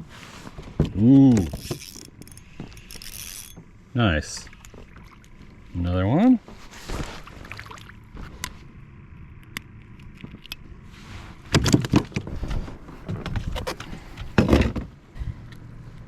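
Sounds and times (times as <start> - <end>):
rattling scraping and knocking: 0.4 - 3.7, 11.5 - 14.9.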